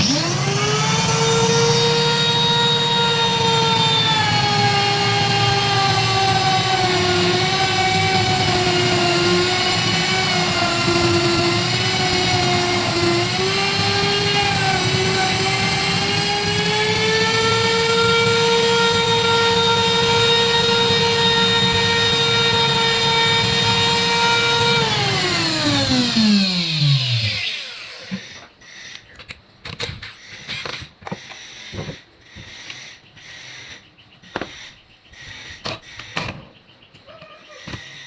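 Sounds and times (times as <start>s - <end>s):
power tool motor whining: 0.0s - 28.4s.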